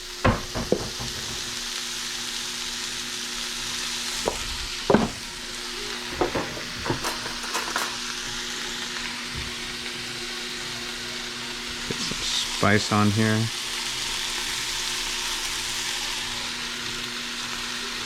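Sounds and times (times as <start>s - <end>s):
food sizzling in frying pan: 0.0s - 18.0s
utensil knocking against pan: 0.2s - 1.6s, 4.3s - 5.2s, 6.2s - 7.9s.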